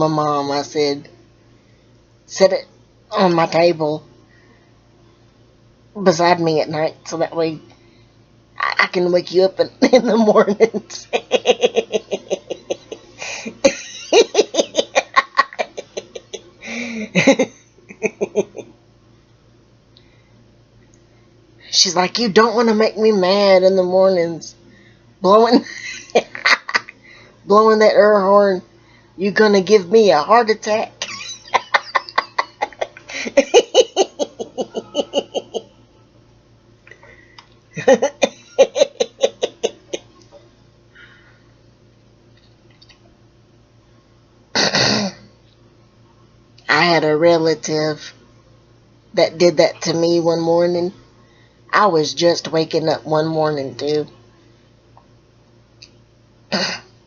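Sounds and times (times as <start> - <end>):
woman laughing hard: 10.9 - 18.7, 25.6 - 26.9, 31.0 - 35.7, 37.8 - 40.1.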